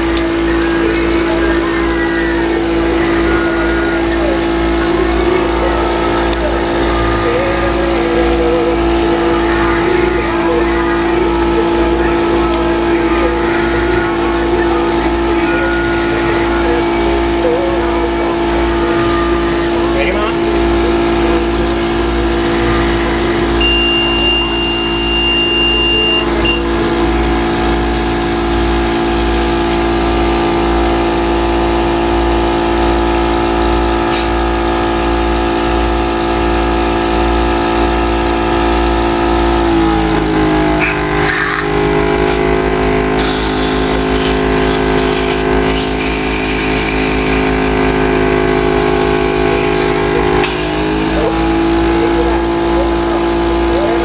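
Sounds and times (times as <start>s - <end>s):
thin high tone: 0.0s - 32.6s
electric percussor buzzing: 0.0s - 54.0s.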